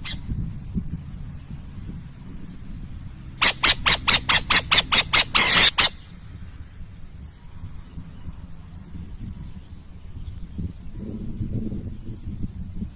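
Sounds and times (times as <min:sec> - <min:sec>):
owl hissing screeches: 0:03.4 - 0:06.1.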